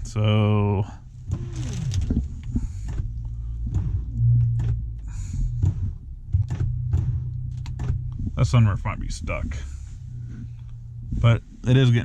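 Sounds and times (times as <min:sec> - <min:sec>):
sunroof motor humming: 0:01.1 - 0:04.6.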